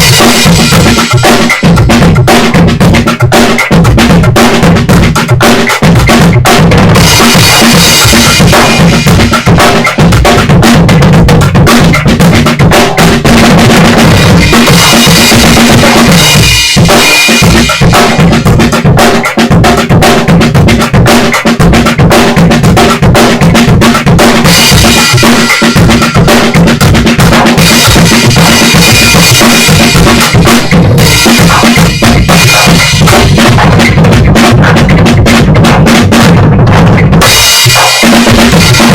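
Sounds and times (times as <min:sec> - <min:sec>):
backing track music: 0:00.0 - 0:38.9
drum kit groove: 0:00.0 - 0:38.9.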